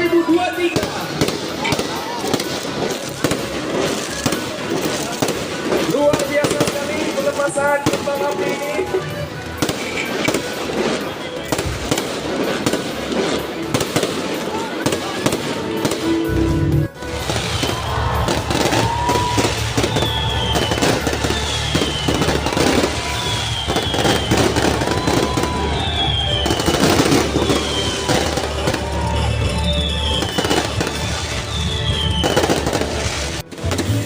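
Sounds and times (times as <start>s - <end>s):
fireworks crackling bursts: 0.0s - 34.0s
background music with bass: 16.1s - 34.0s.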